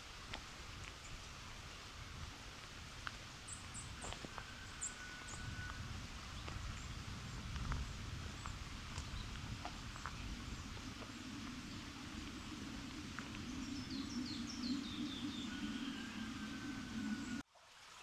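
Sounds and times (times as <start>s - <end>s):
low steady rumble: 0.0s - 17.4s
bird chirps: 8.4s - 17.4s
faint clicks: 8.4s - 17.4s
bird singing descending notes: 9.0s - 17.4s.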